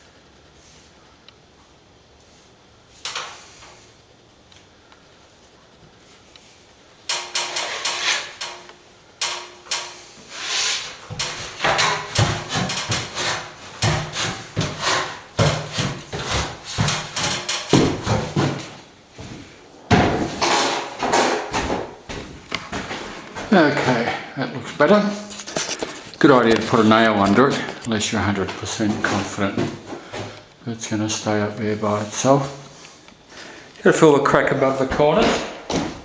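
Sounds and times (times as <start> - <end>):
hand tool scraping plaster: 7.1 - 18.7.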